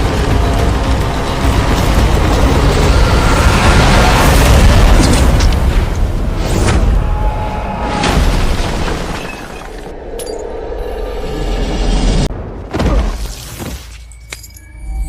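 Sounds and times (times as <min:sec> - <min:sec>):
shattering crash with deep rumble: 0:07.9 - 0:09.8.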